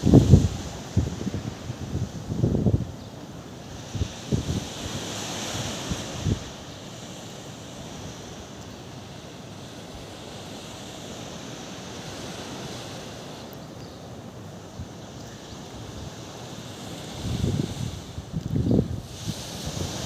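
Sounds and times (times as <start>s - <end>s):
wind rushing: 0.0s - 2.9s, 17.1s - 20.0s
wind buffeting microphone: 0.0s - 3.0s, 3.8s - 6.8s, 17.1s - 20.0s
sea waves washing on shore: 0.0s - 20.0s.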